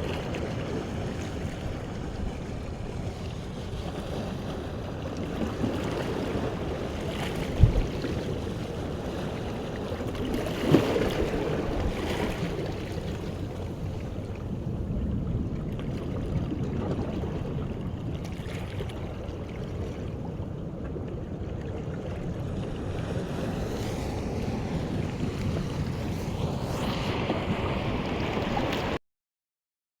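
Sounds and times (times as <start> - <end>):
wind on microphone: 0.0 - 29.0
surf washing on beach: 21.9 - 29.0
wave breaking: 22.1 - 29.0.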